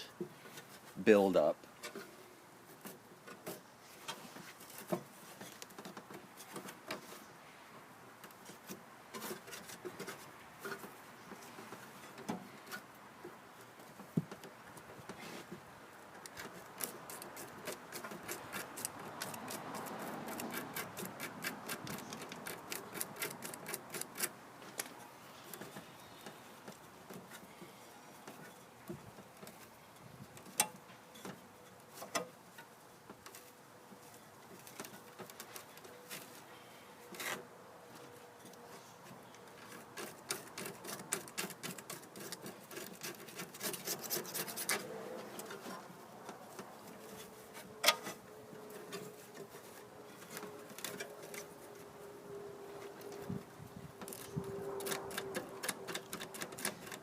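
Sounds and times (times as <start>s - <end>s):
hand tool scraping debris: 39.6s - 51.6s.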